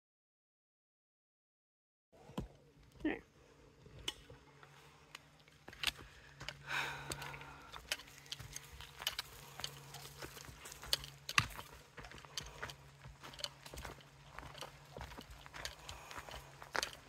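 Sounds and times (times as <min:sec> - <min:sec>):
horse hooves and tack clicking: 0:03.8 - 0:17.0.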